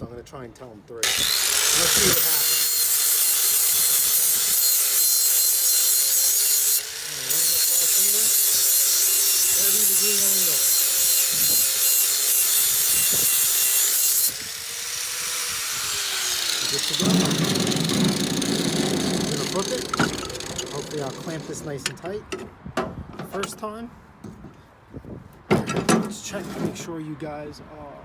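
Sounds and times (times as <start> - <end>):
angle grinder grinding metal: 1.0 - 21.9.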